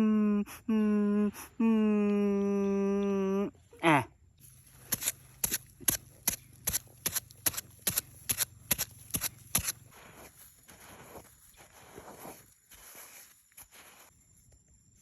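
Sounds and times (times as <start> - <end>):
sharp clicks: 4.9 - 9.8.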